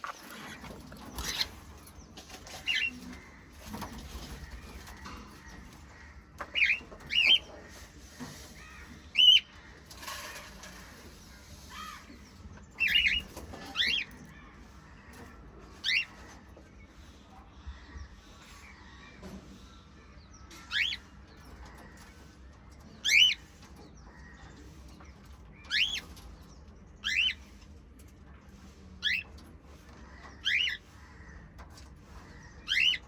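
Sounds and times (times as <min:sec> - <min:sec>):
parrots chirping: 0:00.0 - 0:01.9, 0:02.5 - 0:05.4, 0:06.0 - 0:07.5, 0:32.6 - 0:33.0
faint rustling and scratching: 0:00.0 - 0:19.9, 0:20.5 - 0:33.0.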